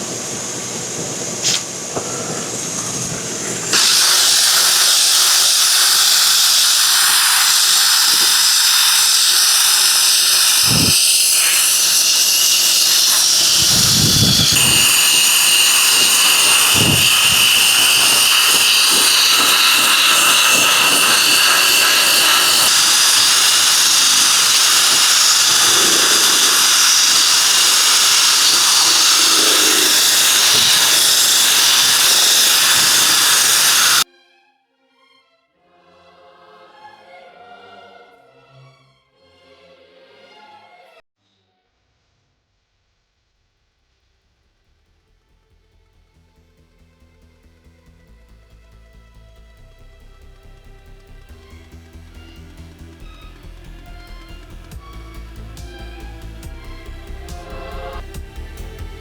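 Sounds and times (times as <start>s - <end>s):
electric drill sanding with hiss: 0.0s - 34.0s, 50.4s - 59.0s.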